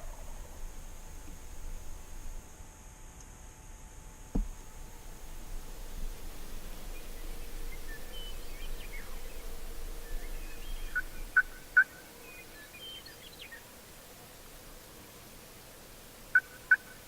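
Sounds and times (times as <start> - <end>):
songbirds chirping: 4.2 - 15.0.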